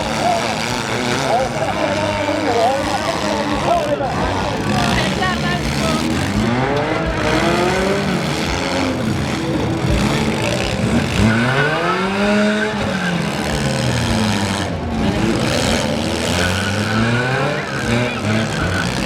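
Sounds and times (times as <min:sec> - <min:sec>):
car engines revving: 0:00.0 - 0:19.0.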